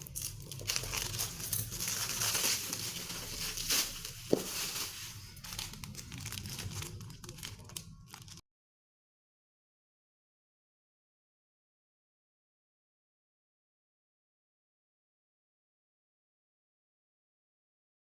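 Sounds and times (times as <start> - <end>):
plastic packaging crinkling: 0.0 - 8.4.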